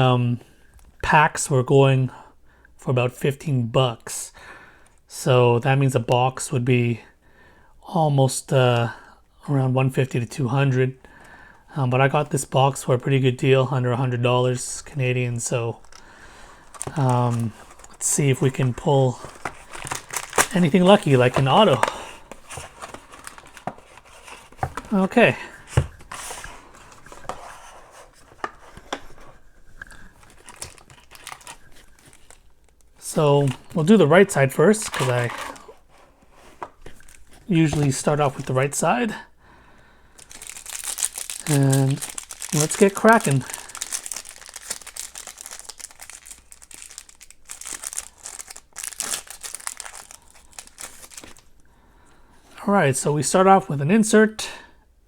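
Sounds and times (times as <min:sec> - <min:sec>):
plastic packaging crinkling and tearing: 0:14.5 - 0:33.9, 0:34.6 - 0:35.8, 0:40.2 - 0:51.6.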